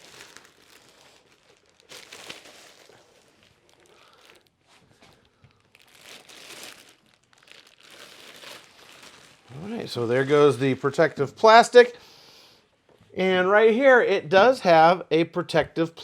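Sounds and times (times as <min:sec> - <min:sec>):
plastic wrap crinkling: 0:00.0 - 0:11.9.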